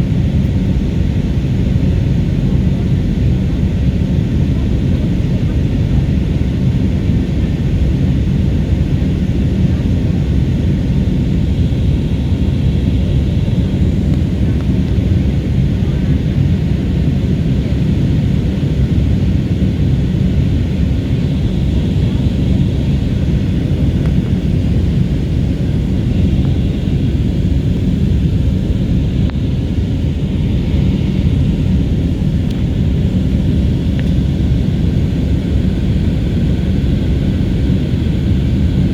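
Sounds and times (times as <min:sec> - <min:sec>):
airliner cabin rumble: 0:00.0 - 0:38.9.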